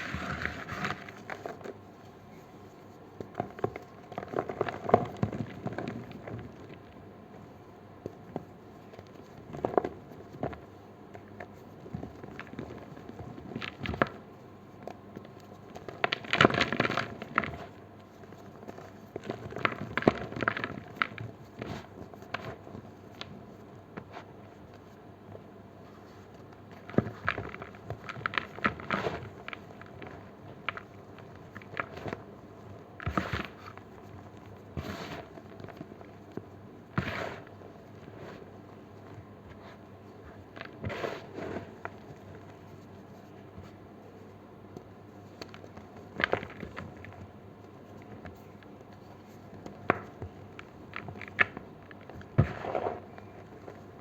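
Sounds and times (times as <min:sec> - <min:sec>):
chalk crunching and crackling: 0:37.0 - 0:44.3, 0:45.2 - 0:53.9.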